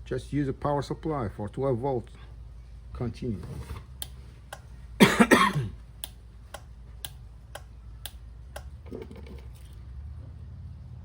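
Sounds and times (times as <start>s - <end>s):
car alarm unit clicking: 6.0s - 8.8s.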